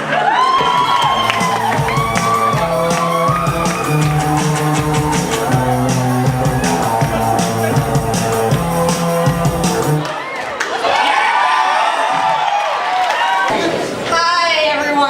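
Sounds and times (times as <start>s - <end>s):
loud rock music: 0.7s - 10.0s.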